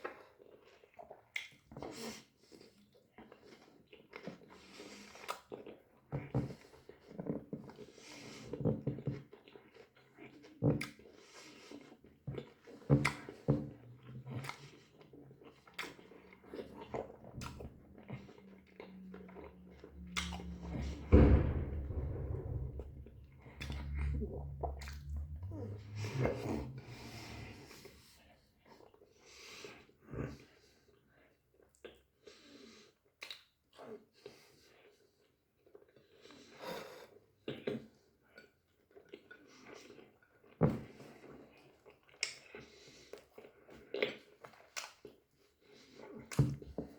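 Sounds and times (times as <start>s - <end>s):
loud low thump: 16.9s - 28.2s.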